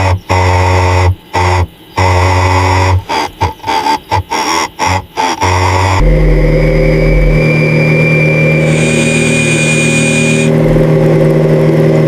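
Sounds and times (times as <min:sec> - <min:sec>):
thin high whine: 0:05.4 - 0:12.0
truck engine running: 0:05.7 - 0:12.0.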